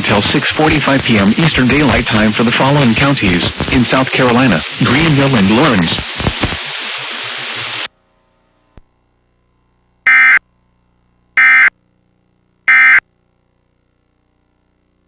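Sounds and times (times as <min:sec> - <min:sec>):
buzzy digital data bursts: 0:00.0 - 0:07.9
hiss: 0:05.9 - 0:07.9.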